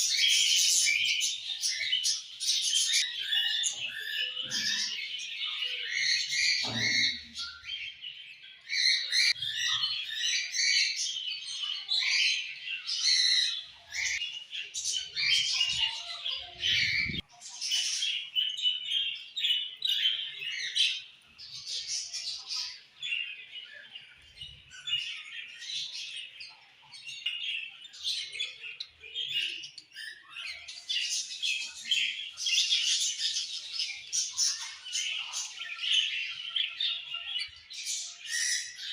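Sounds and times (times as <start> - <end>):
budgies chattering and warbling: 0.0 - 38.9
soft knocks from cage: 6.6 - 7.4.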